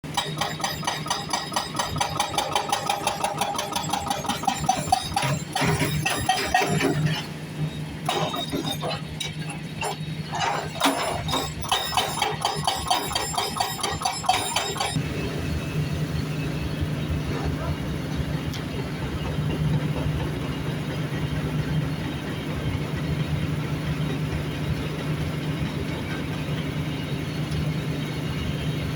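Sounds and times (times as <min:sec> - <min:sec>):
fast mechanical knocking: 0:00.1 - 0:07.0, 0:10.8 - 0:15.0
engine running: 0:00.1 - 0:28.9.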